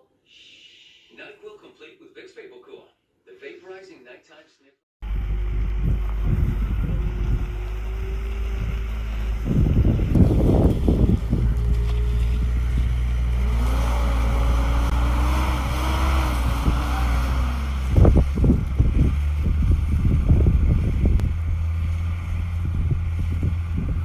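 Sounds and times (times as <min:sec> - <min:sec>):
wind buffeting microphone: 0:05.1 - 0:24.0.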